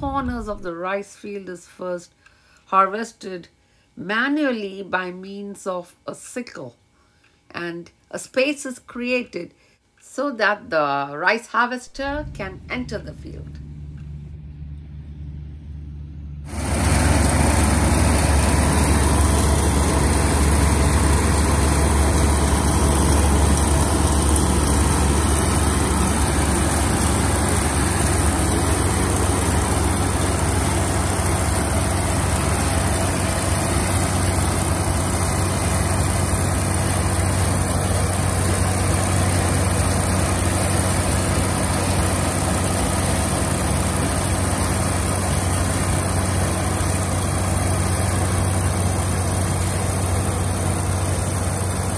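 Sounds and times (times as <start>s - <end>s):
combine harvester engine drone: 12.0s - 51.9s.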